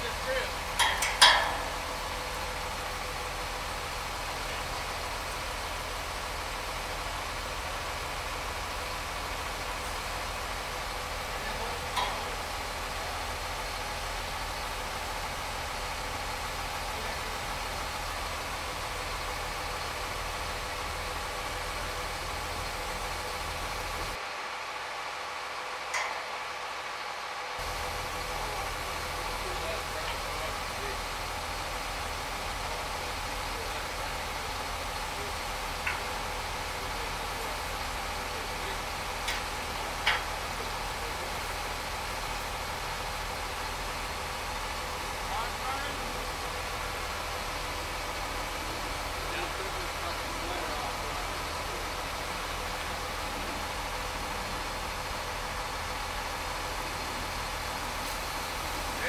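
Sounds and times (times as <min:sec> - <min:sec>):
engine rumbling steadily: 0:00.0 - 0:59.0
sharp metal clanks: 0:00.7 - 0:02.3, 0:11.9 - 0:12.4.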